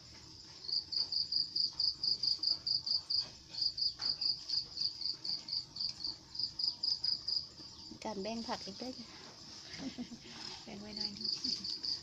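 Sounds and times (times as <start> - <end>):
cricket chirping: 0.0 - 12.0.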